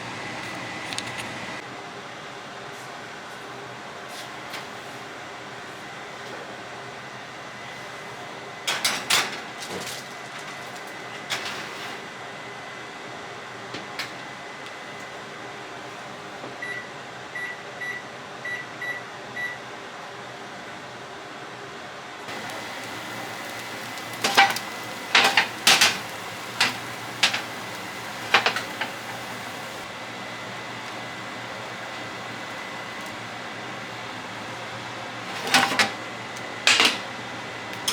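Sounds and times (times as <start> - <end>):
appliance hum: 0.0 - 37.9
dishes and utensils clinking: 23.5 - 29.8, 36.7 - 37.1.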